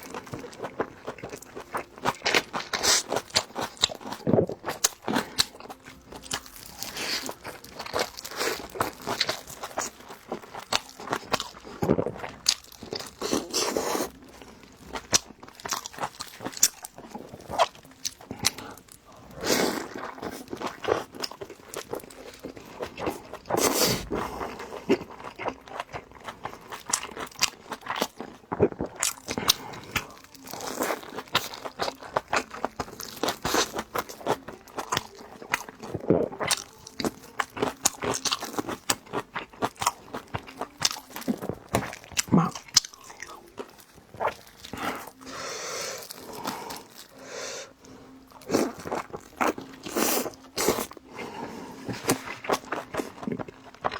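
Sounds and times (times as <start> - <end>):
person biting and chewing: 0.0 - 47.5, 48.2 - 53.9.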